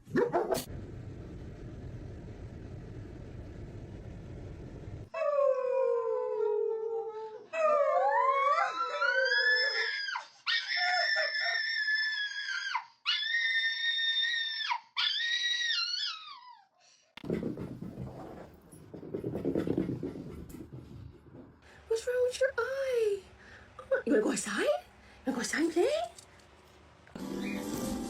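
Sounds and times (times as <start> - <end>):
dog howling: 5.1 - 16.6
handling noise rumbling: 17.2 - 21.8.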